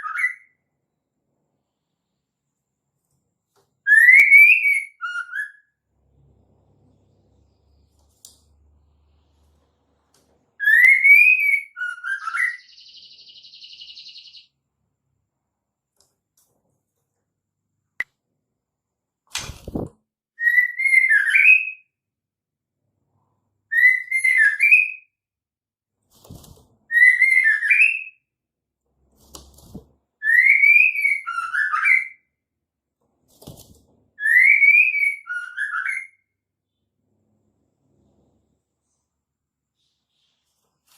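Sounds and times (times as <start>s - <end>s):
bird whistled calls: 10.6s - 14.4s.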